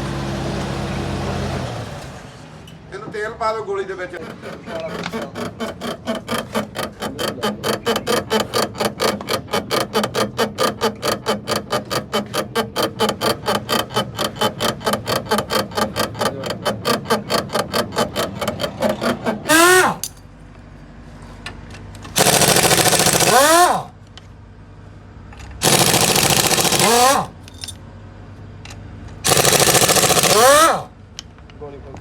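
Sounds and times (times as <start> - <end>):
pneumatic impact wrench spinning: 4.2 - 20.2, 22.1 - 24.0, 25.6 - 27.8, 29.2 - 31.0
rapid mechanical clicking: 4.2 - 20.2, 22.0 - 24.0, 25.6 - 27.8, 29.1 - 31.0.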